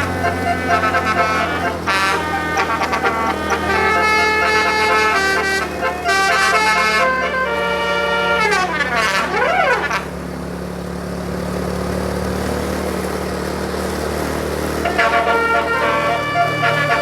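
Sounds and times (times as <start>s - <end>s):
bus air horn melody: 0.0s - 10.6s, 14.7s - 17.0s
low engine hum: 0.0s - 17.0s.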